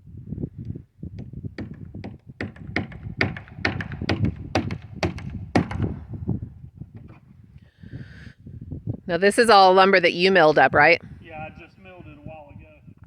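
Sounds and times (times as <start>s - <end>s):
rapid knocks and thuds: 1.2s - 6.0s.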